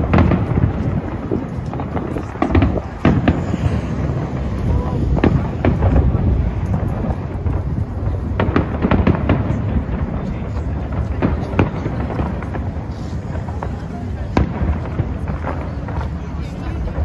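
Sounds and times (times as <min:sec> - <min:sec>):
low rumble of booming shells: 0:00.0 - 0:16.2
fireworks bangs and crackles: 0:00.0 - 0:17.0.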